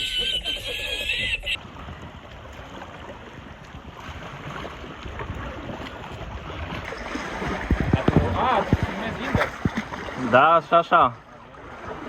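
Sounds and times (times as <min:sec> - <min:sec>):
water lapping around canoe: 0:01.5 - 0:12.0
wind buffeting microphone: 0:01.6 - 0:10.3.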